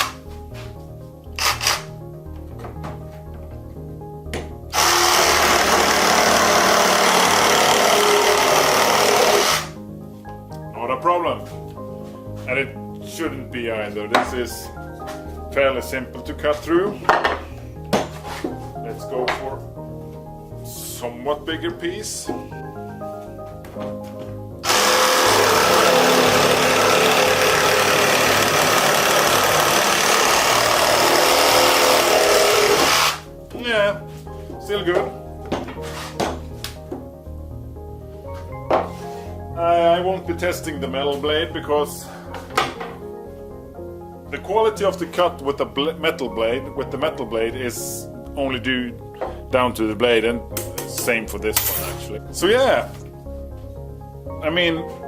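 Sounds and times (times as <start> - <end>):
background music: 0.0 - 55.0
reciprocating saw cutting wood: 4.8 - 9.8, 24.6 - 33.3.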